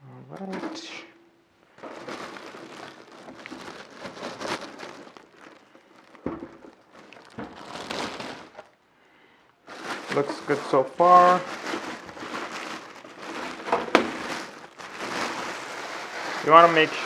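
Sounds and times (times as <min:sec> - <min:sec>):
plastic packaging crinkling: 0:01.7 - 0:08.8, 0:09.6 - 0:17.0.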